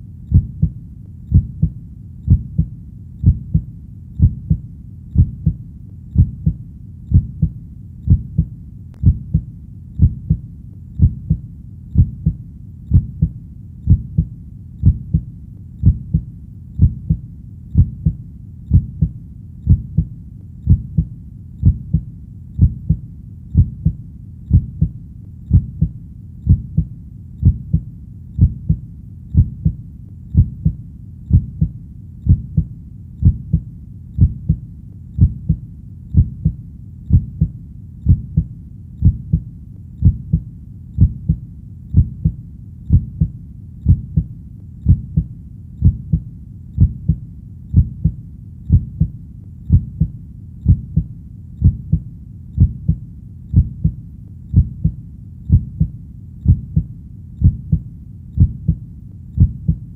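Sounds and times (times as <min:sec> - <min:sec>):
heartbeat thumping: 0:00.0 - 0:34.6, 0:35.2 - 0:59.9.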